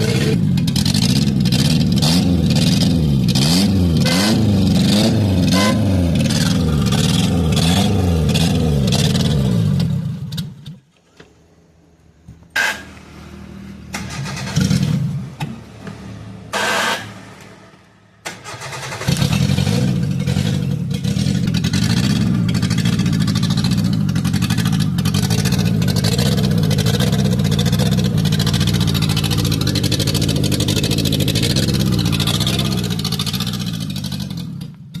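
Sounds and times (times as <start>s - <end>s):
car engine starting and running: 0.0s - 10.9s, 12.3s - 35.0s
exhaust puffing: 12.5s - 34.5s.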